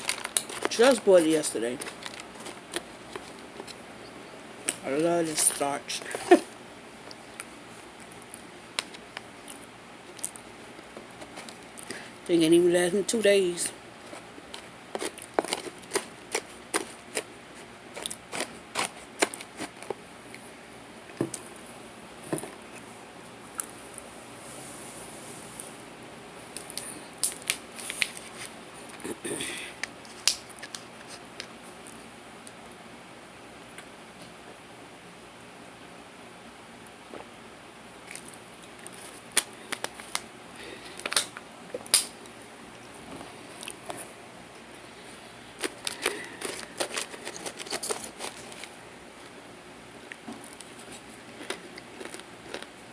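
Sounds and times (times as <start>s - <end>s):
crisp chewing crunches: 0.0s - 3.8s, 7.1s - 12.0s, 14.0s - 20.4s, 38.0s - 42.5s, 45.6s - 48.8s, 49.9s - 52.9s.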